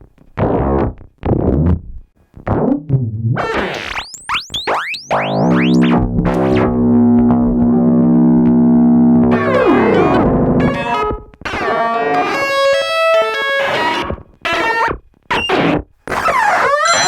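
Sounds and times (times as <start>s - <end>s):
buzzy synthesizer drone: 4.2s - 14.1s
synthesizer pitch chirps: 4.3s - 6.9s, 16.7s - 17.0s
synthesizer plucky notes: 4.6s - 11.1s.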